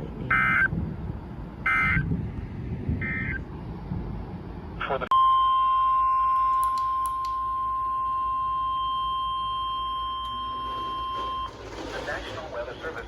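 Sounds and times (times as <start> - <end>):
high-pitched alarm tone: 1.7 - 2.1.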